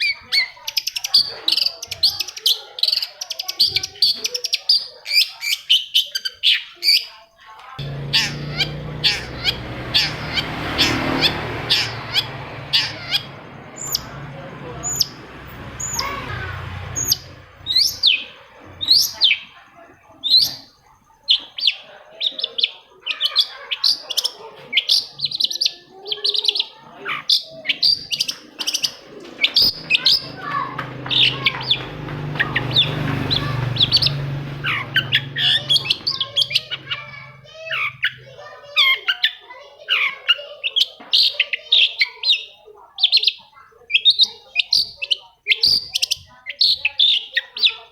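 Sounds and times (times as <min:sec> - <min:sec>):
bird singing sharp chirps: 0:07.8 - 0:19.6, 0:24.1 - 0:38.3.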